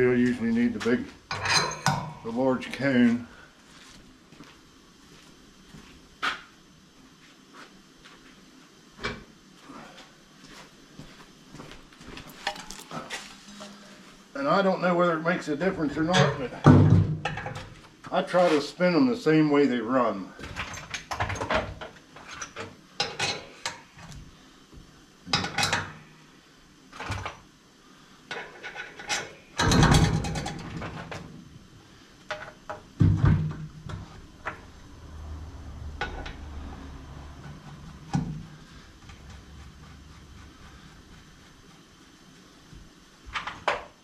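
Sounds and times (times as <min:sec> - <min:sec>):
metal clanks and scraping: 0:01.3 - 0:02.2, 0:12.2 - 0:14.1
faint low hum: 0:09.6 - 0:16.8
metal clatters: 0:12.2 - 0:13.9.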